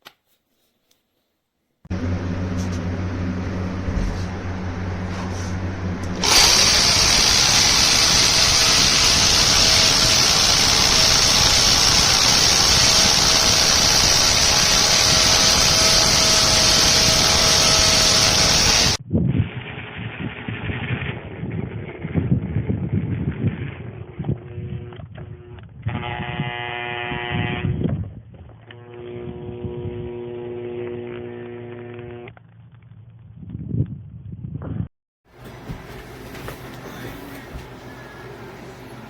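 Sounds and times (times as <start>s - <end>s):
lower steady hum: 1.9s - 6.6s
hammer drill motor whining: 5.9s - 19.0s, 28.7s - 32.3s.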